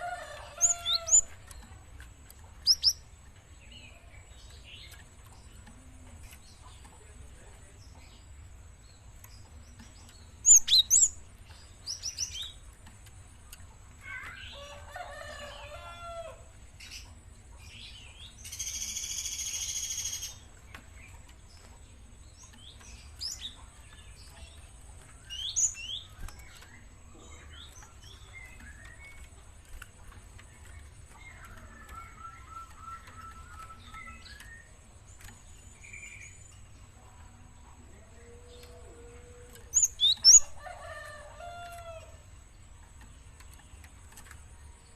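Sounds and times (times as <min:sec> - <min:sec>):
sparrow chirping and calling: 0:00.0 - 0:01.7, 0:02.6 - 0:05.7, 0:09.3 - 0:12.7, 0:16.8 - 0:21.7, 0:22.4 - 0:36.8, 0:39.6 - 0:42.0.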